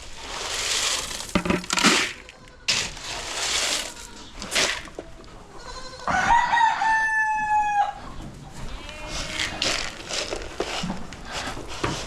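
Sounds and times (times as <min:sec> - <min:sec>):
rustling: 0:00.0 - 0:05.0, 0:08.9 - 0:12.0
rooster crowing: 0:06.0 - 0:08.0.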